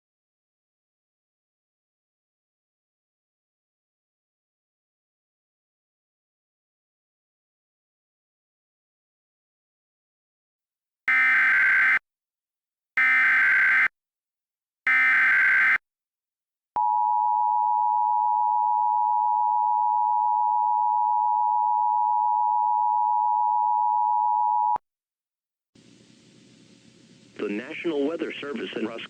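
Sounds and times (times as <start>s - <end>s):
steady two-tone alert signal: 11.1s - 12.0s, 13.0s - 13.9s, 14.9s - 15.8s.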